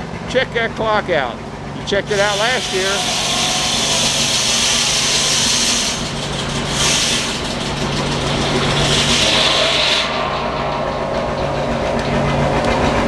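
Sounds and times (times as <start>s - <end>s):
sawmill engine hum: 0.0s - 13.0s
high hissing noise: 2.1s - 7.4s.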